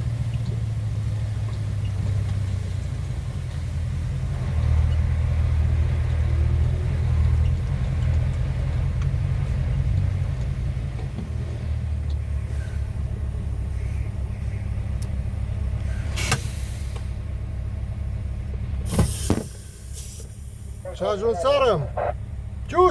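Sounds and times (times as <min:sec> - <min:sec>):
diesel engine low rumble: 0:00.0 - 0:22.9
short sharp hiss: 0:18.9 - 0:20.8.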